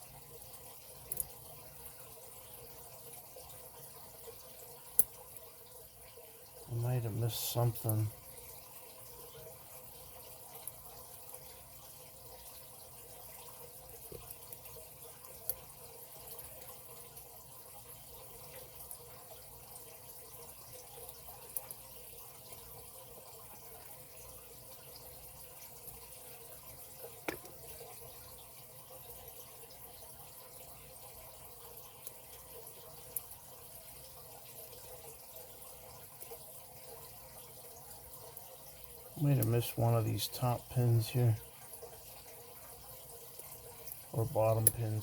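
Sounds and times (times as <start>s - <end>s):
steady background hiss: 6.7s - 8.2s, 39.2s - 41.5s, 44.1s - 45.0s.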